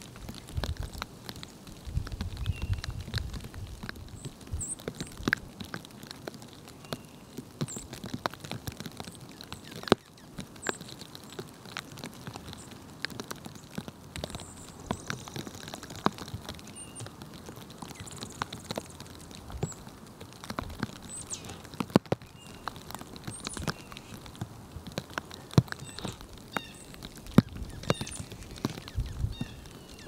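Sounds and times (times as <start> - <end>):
birds scratching in snow: 20.8 - 24.5, 25.2 - 30.0
high bird chirps: 25.8 - 30.0.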